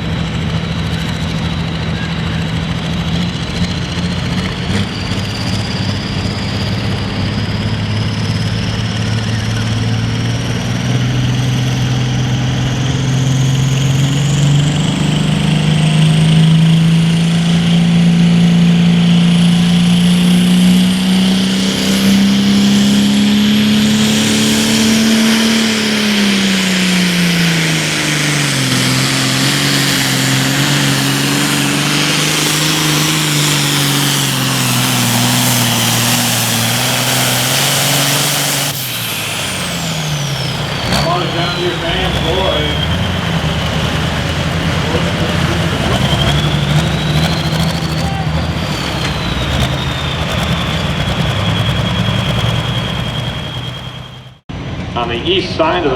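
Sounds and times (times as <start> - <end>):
diesel tractor engine under load: 0.0 - 55.9
high turbo whistle: 13.6 - 54.8.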